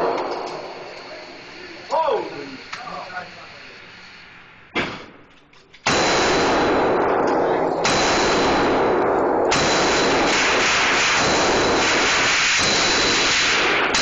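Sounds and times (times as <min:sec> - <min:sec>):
rifle shot: 0:00.0 - 0:01.1, 0:05.8 - 0:14.0
loud harsh continuous noise: 0:00.0 - 0:14.0.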